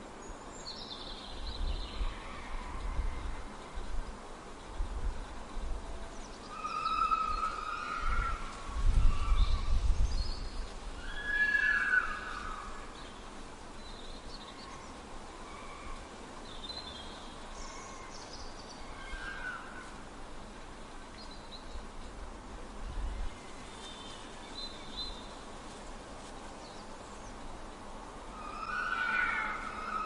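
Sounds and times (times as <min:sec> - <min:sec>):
steady hiss: 0:00.0 - 0:30.0
fox whining calls: 0:11.0 - 0:12.8, 0:28.3 - 0:30.0.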